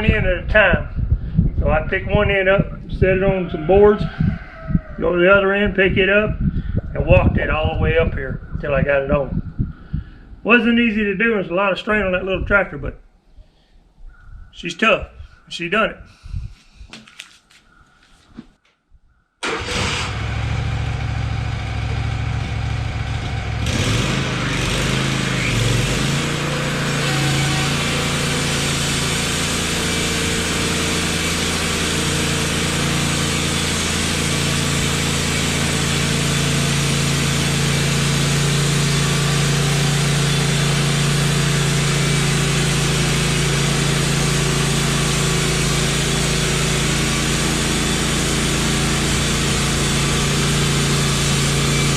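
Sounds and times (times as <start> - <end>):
sawmill engine running: 19.4 - 51.9.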